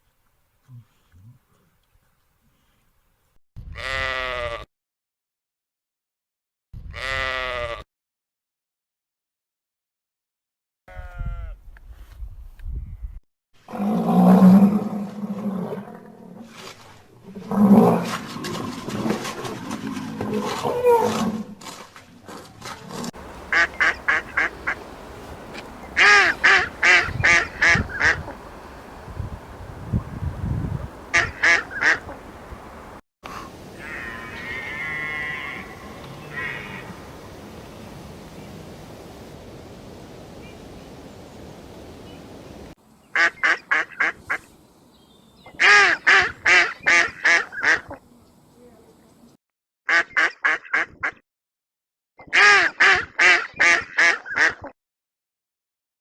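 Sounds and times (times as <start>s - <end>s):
bird harsh calls: 23.2s - 33.0s
ducks quacking: 23.2s - 33.0s
steady background hiss: 23.2s - 33.0s.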